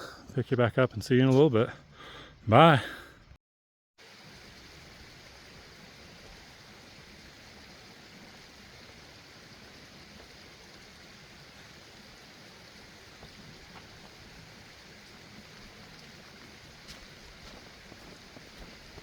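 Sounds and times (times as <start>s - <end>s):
faint creek rushing: 4.0s - 19.0s.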